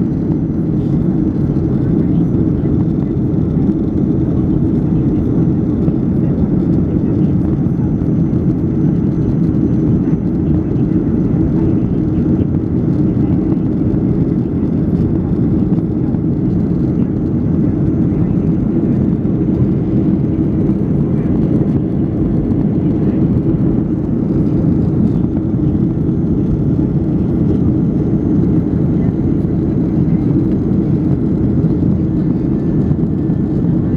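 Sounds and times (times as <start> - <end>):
jet engine cabin rumble: 0.0 - 33.9.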